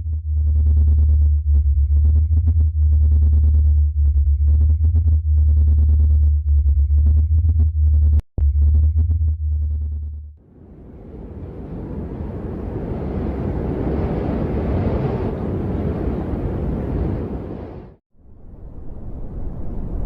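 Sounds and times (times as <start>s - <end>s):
deep electronic drone fluttering: 0.0s - 10.4s.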